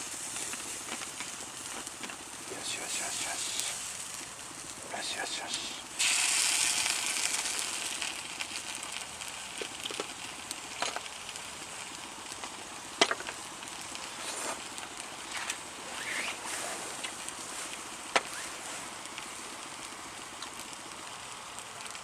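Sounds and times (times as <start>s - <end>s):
fire crackling and popping: 0.0s - 22.0s
meat sizzling over fire: 0.0s - 22.0s.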